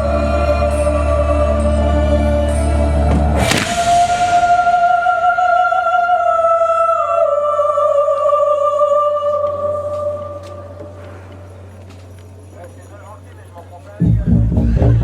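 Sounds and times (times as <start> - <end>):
sudden crash: 3.1 - 5.7.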